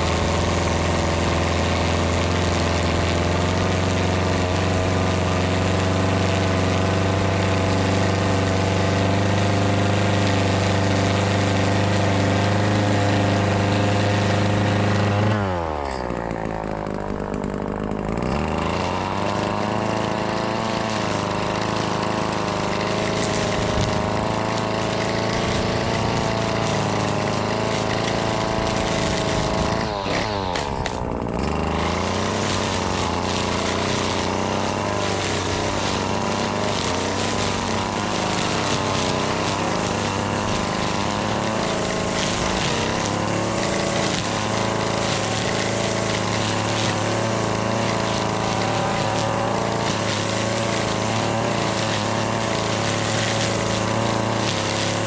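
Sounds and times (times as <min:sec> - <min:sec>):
string trimmer engine revving: 0:00.0 - 0:55.0.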